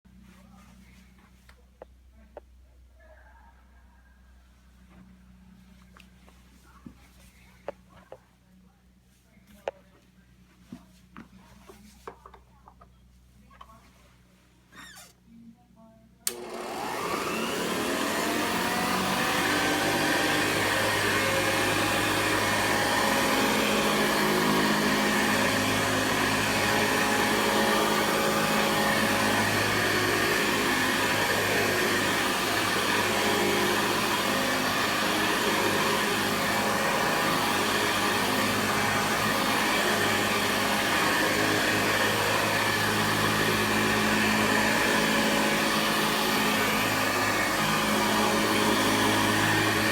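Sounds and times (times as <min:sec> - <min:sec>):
vacuum cleaner motor whining: 0:16.2 - 0:49.9
vacuum cleaner switch click: 0:16.3 - 0:17.2.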